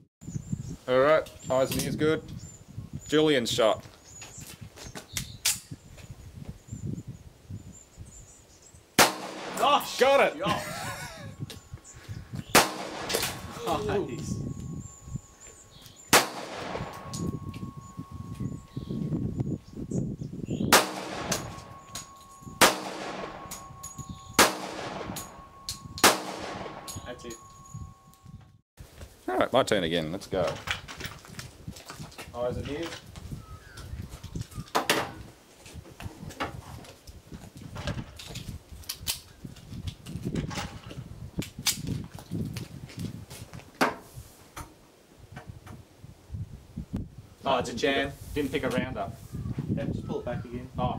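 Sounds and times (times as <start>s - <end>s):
pistol shots: 9.0s - 10.1s, 12.5s - 13.6s, 16.1s - 17.5s, 20.7s - 23.8s, 24.4s - 27.1s.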